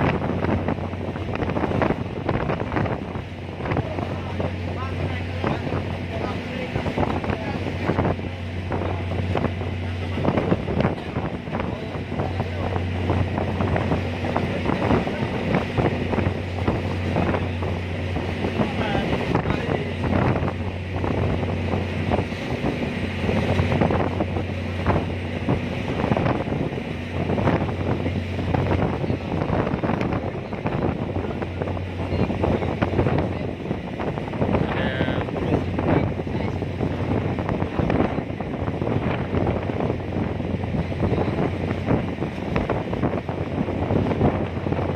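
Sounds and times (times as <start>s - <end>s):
ferry engine low drone: 0.0s - 44.9s
wind buffeting microphone: 0.0s - 44.9s.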